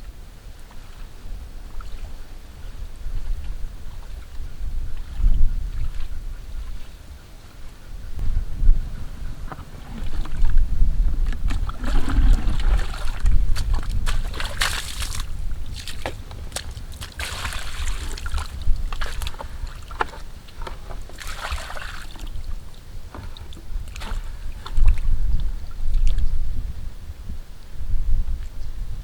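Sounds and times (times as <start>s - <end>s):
wind on microphone: 0.0s - 29.0s
water sloshing and splashing: 9.8s - 10.6s, 11.2s - 26.2s.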